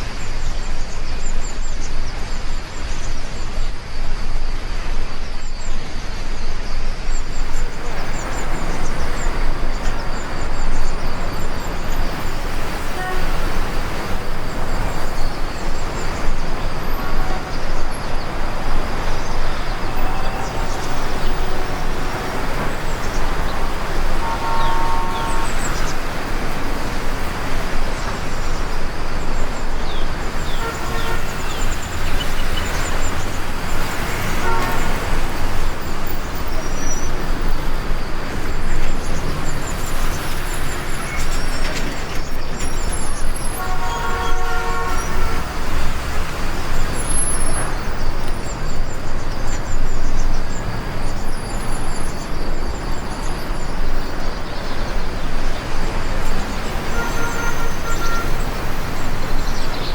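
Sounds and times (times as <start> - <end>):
road traffic: 0.0 - 59.9
heavy rain: 7.0 - 59.9
vehicle horn: 10.7 - 27.8, 30.3 - 33.2, 33.8 - 35.9, 43.5 - 46.4, 56.8 - 59.6.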